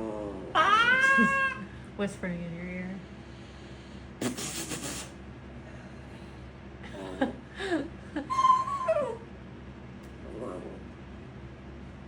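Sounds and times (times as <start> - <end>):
dog whining and yowling: 0.6 - 1.6.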